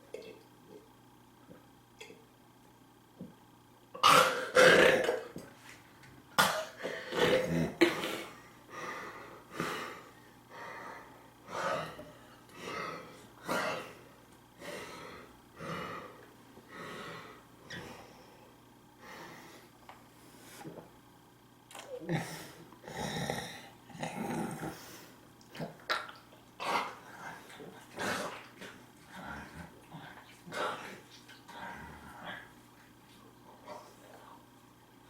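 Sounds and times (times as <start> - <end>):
man burping loudly: 4.0 - 5.4, 6.4 - 8.3
breathy throat sounds: 21.9 - 32.5.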